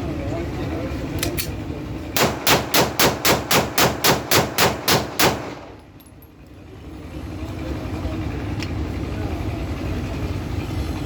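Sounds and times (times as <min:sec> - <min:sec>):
pistol shots: 0:02.2 - 0:05.8.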